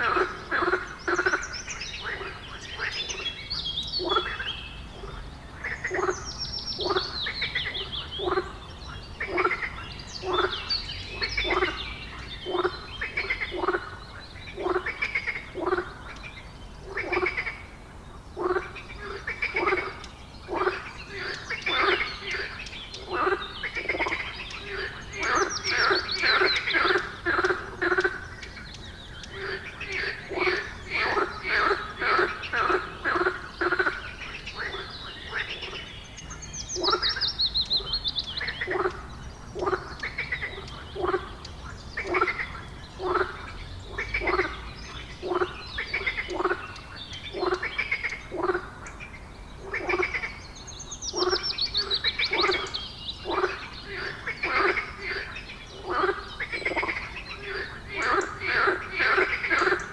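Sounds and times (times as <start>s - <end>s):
croaking animal calls: 18.4s - 49.0s.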